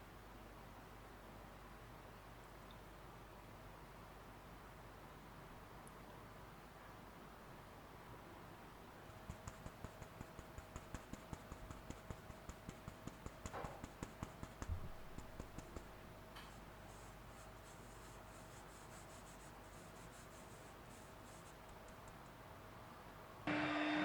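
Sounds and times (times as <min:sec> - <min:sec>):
faint steady hum: 0:00.0 - 0:24.0
light rhythmic clicking: 0:09.0 - 0:23.2
faint ticking and scraping: 0:09.1 - 0:22.4.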